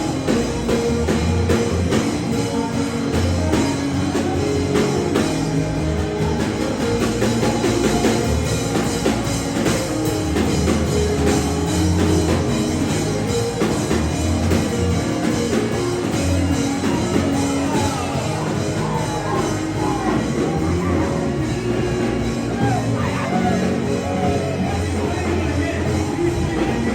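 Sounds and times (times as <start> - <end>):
bass notes: 0.0 - 26.9
drum kit: 0.0 - 26.9
worship band music: 0.0 - 26.9
person singing: 16.3 - 26.9.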